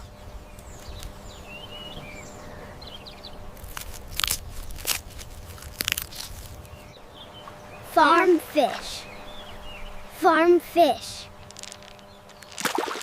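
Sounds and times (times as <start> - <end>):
turtle crunching food: 3.4 - 13.0
faint bird chirps: 8.7 - 10.2.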